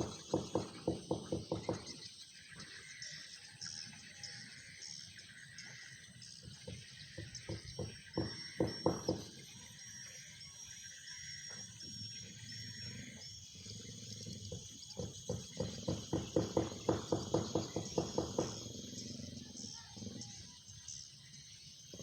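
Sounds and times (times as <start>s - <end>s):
animal making rough pulsed sounds: 12.7s - 16.6s, 17.8s - 20.7s.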